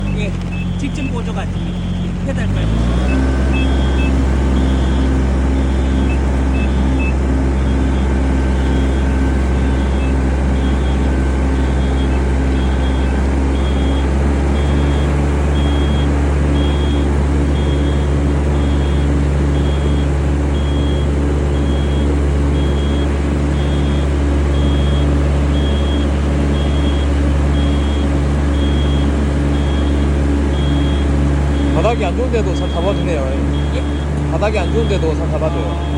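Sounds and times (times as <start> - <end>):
short electronic beep: 0.0 - 14.0, 23.6 - 35.9
engine running steadily: 0.0 - 35.9.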